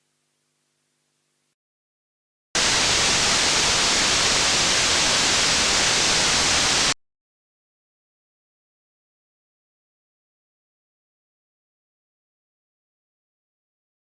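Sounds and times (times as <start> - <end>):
white noise hiss: 0.0 - 1.5, 2.6 - 7.0.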